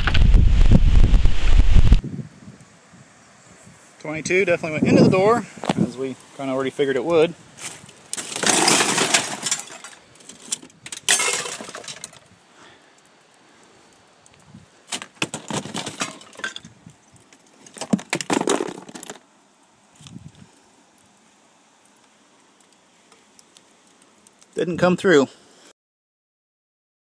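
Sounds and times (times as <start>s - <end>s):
broken glass rattling in car door: 8.2s - 9.9s, 11.0s - 12.2s.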